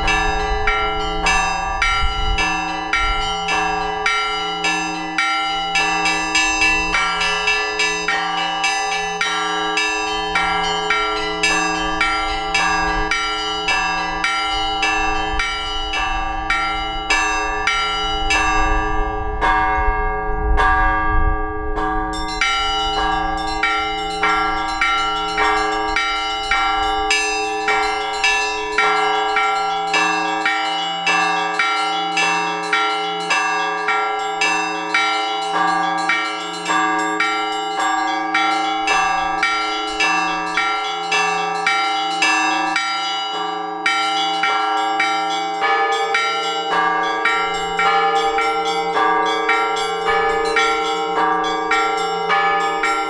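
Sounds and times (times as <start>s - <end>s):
large church bell striking: 0.0s - 53.0s
small bells ringing quick patterns: 22.1s - 53.0s.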